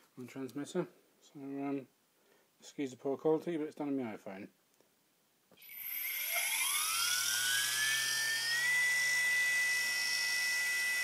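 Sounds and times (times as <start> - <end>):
router spindle motor whine: 5.6 - 11.0.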